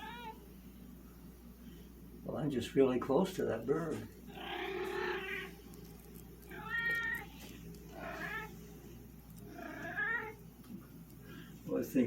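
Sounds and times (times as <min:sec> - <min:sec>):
cat meowing: 0:00.0 - 0:00.4, 0:04.3 - 0:05.5, 0:06.4 - 0:08.6, 0:09.5 - 0:10.4.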